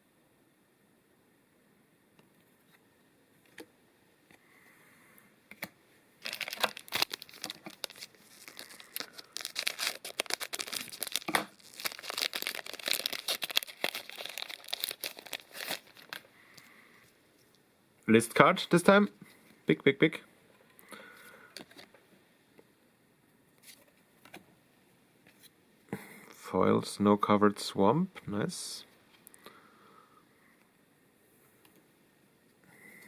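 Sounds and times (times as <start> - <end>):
wrapper tearing and crinkling: 6.2 - 16.3.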